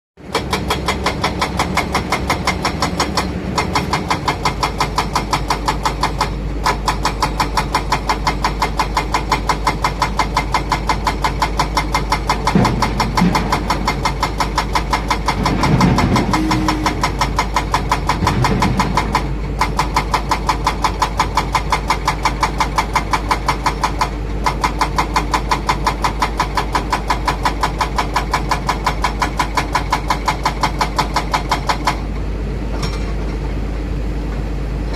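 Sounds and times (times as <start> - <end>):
heavy diesel engines running: 0.2 - 34.9
brief pitched sounds: 16.3 - 17.2.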